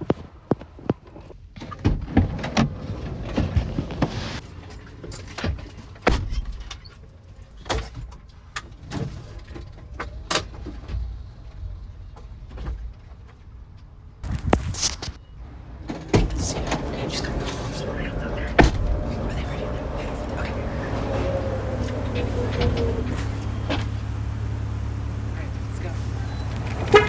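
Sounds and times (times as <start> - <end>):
low rumble: 14.1 - 26.9.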